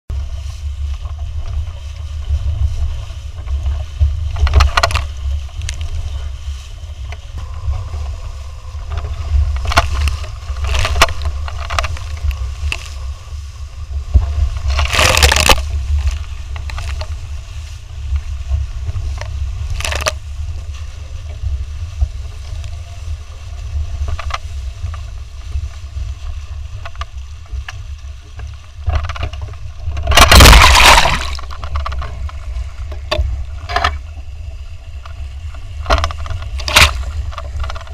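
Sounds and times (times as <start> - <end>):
water rushing past hulls: 0.1 - 37.9
water splashes: 0.1 - 37.9
wind buffeting microphone: 0.1 - 37.9.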